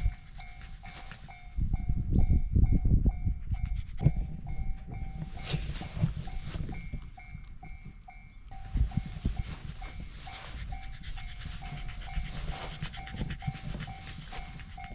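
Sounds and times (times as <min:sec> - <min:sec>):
dog panting: 0:00.0 - 0:01.6, 0:03.4 - 0:06.4, 0:08.6 - 0:14.9
railroad crossing bell ringing: 0:00.0 - 0:14.9.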